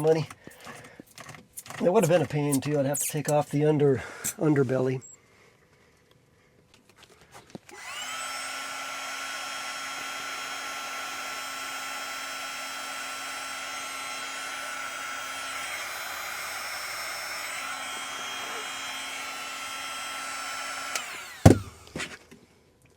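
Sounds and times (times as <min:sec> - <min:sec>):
small electric motor whining: 0:07.7 - 0:22.2.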